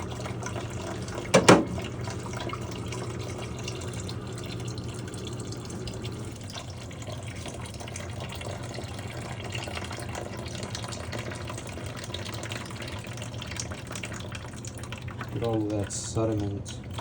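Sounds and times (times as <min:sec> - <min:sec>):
water running and splashing: 0:00.0 - 0:17.0.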